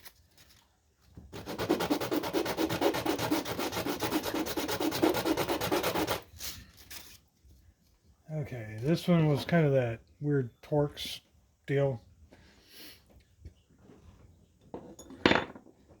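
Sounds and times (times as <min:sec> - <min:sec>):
hand sanding strokes: 0:01.3 - 0:06.3.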